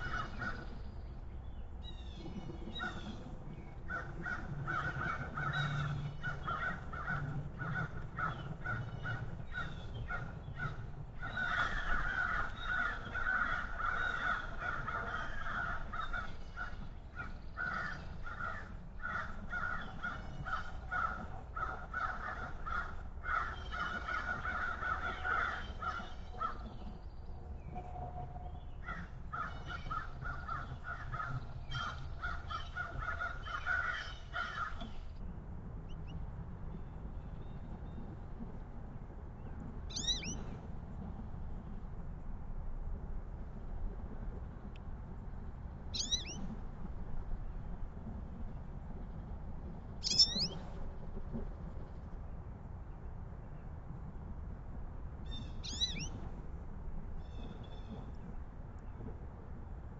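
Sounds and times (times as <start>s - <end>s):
harsh bird calls: 39.9s - 40.4s, 46.0s - 46.4s, 50.0s - 50.6s, 55.3s - 56.1s.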